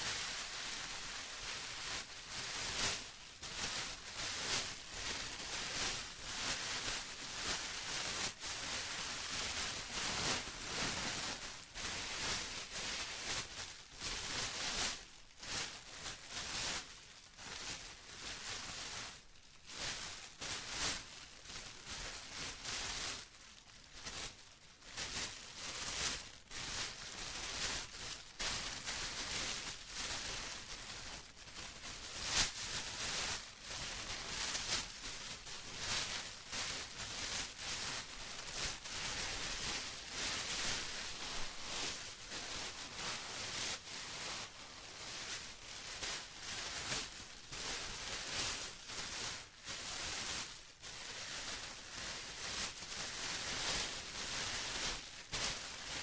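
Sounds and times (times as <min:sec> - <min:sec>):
plastic crinkling: 0:17.5 - 0:55.9.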